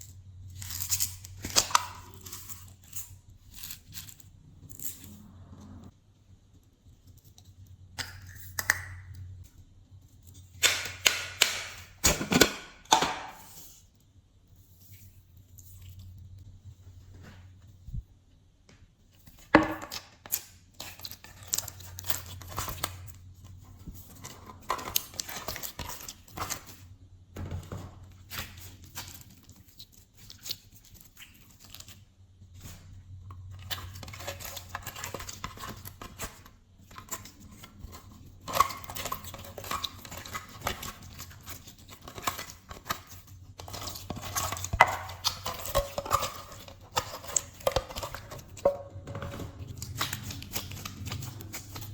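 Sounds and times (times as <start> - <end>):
slime crackling and squishing: 33.4 - 51.9.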